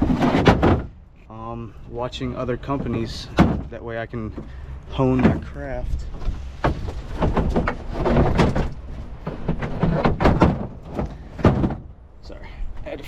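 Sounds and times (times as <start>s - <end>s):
truck door knocks and thumps: 0.0s - 1.0s, 2.8s - 5.6s, 6.2s - 12.0s.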